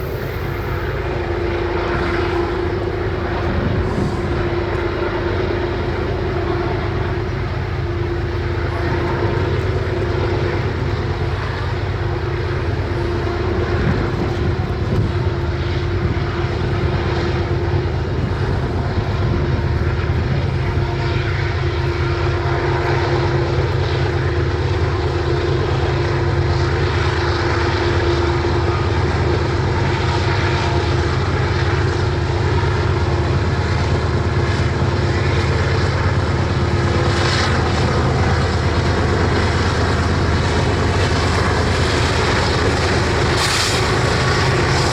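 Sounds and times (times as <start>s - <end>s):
diesel locomotives droning: 0.0s - 44.9s.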